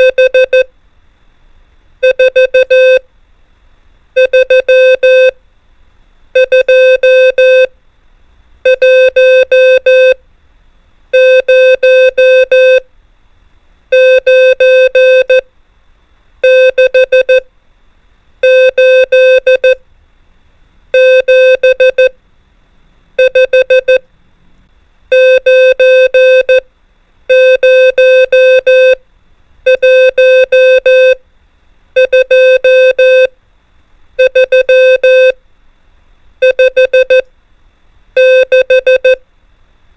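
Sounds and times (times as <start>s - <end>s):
morse code beeping: 0.0s - 0.6s, 2.0s - 3.0s, 4.2s - 5.3s, 8.7s - 10.2s, 11.2s - 12.8s, 16.4s - 17.4s, 18.4s - 19.8s, 21.0s - 22.2s, 23.2s - 24.0s, 25.1s - 26.6s, 27.3s - 29.0s, 29.7s - 31.2s, 32.0s - 33.3s, 34.2s - 35.4s, 36.4s - 37.2s, 38.2s - 39.2s.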